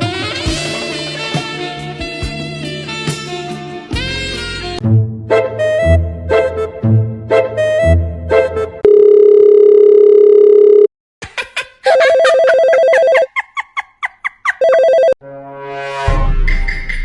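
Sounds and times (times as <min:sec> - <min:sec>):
telephone ringing: 0:08.8 - 0:10.9, 0:11.9 - 0:13.3, 0:14.6 - 0:15.2.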